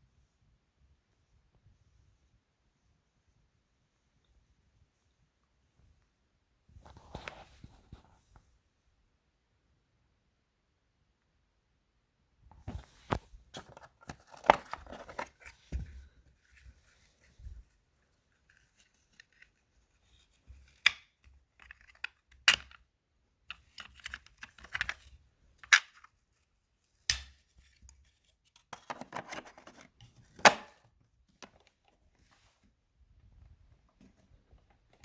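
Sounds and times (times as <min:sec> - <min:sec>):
rustling: 0:12.6 - 0:20.8
plastic parts clicking and knocking: 0:20.5 - 0:22.9.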